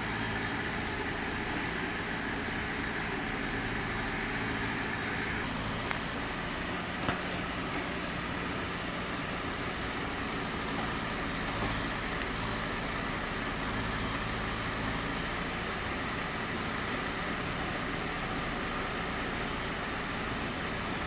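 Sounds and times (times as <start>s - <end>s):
diesel engine under load: 0.0s - 21.0s.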